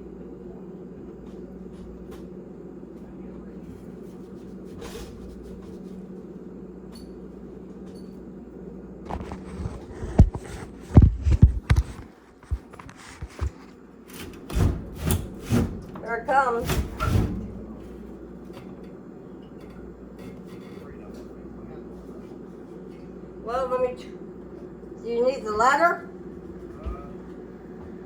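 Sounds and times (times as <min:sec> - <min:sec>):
steady low hum: 0:00.0 - 0:28.0
heavy unit knocking and scraping: 0:14.1 - 0:21.1.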